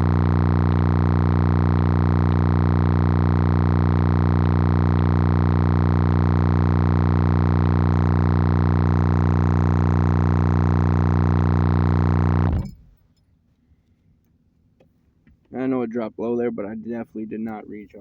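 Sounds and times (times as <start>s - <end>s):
subwoofer low tone drone: 0.0s - 13.0s.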